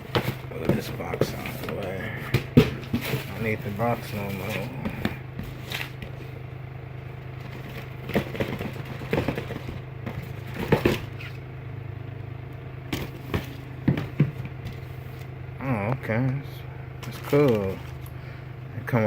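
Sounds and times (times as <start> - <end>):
shoebox packaging rustling: 0.0 - 6.4, 7.3 - 11.4
steady low hum: 0.0 - 19.0.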